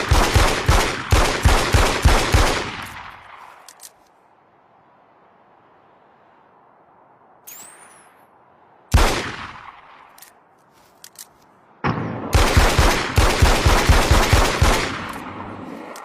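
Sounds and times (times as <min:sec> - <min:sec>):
pistol shots: 0:00.0 - 0:03.6, 0:08.9 - 0:10.1, 0:11.8 - 0:15.6.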